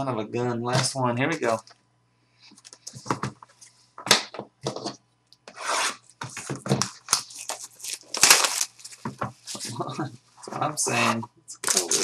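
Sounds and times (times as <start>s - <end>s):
wrapper crinkling and tearing: 6.8s - 9.8s, 11.6s - 12.0s.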